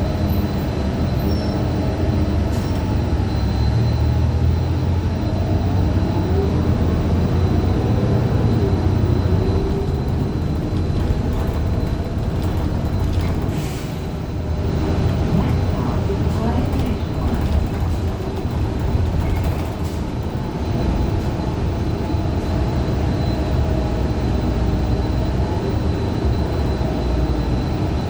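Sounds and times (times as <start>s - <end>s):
bus interior engine rumble: 0.0s - 28.0s.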